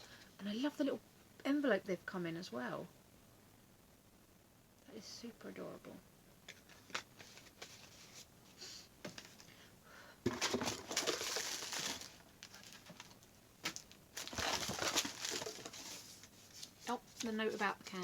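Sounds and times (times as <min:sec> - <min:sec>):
paper and packaging rustling: 0:06.5 - 0:08.3, 0:09.1 - 0:09.5, 0:10.3 - 0:18.0.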